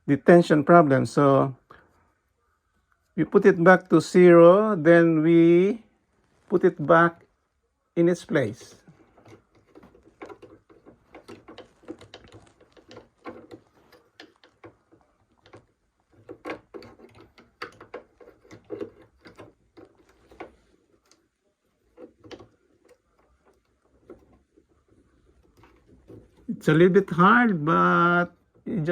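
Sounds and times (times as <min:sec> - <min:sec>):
metal clicks knocks and scrapes: 0:08.5 - 0:28.8.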